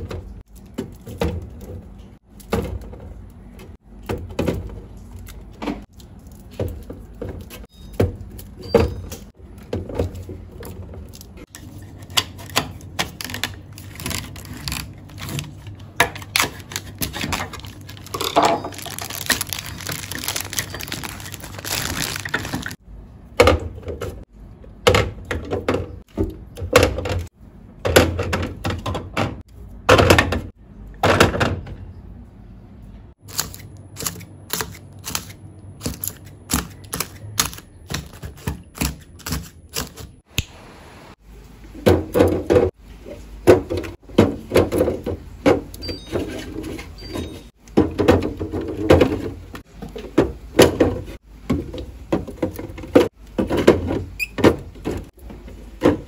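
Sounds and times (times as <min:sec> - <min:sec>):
plastic containers knocking on shelves: 0:43.4 - 0:45.7, 0:47.7 - 0:56.0.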